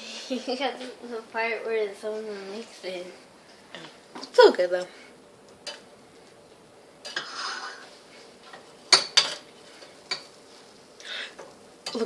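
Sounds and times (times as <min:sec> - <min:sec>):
dishes clinking: 0:08.5 - 0:09.5, 0:10.1 - 0:10.3.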